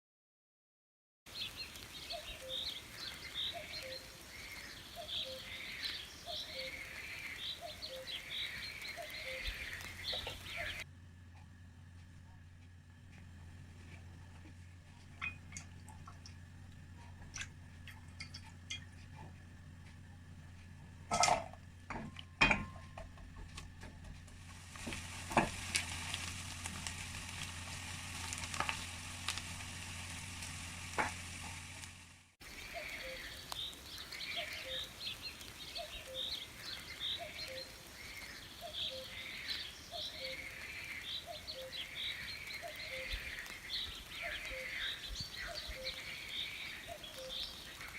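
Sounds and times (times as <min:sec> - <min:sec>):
food frying in hot oil: 0:01.3 - 0:07.5, 0:24.6 - 0:47.9
birds chirping: 0:01.3 - 0:47.9
steady hum: 0:08.2 - 0:33.3
utensils clinking: 0:15.0 - 0:23.3.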